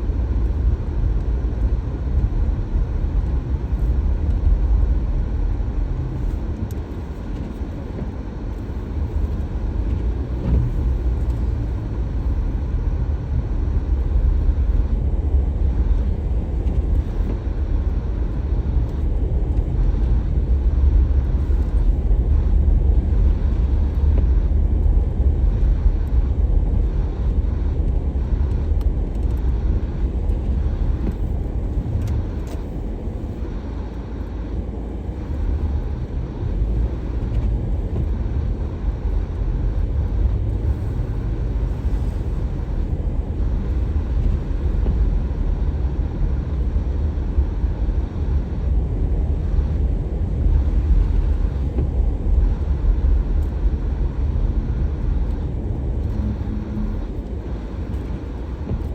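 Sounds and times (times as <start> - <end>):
car engine and road noise: 0.0 - 58.9.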